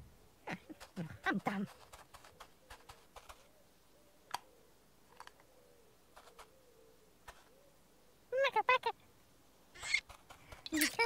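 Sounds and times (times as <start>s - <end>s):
faint clicks: 4.3s - 4.5s.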